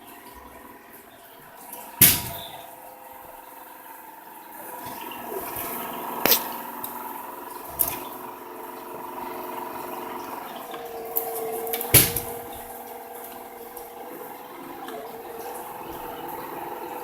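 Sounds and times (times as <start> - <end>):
vacuum cleaner humming: 0.0 - 17.0
vacuum cleaner knocking: 2.0 - 2.7, 7.6 - 17.0.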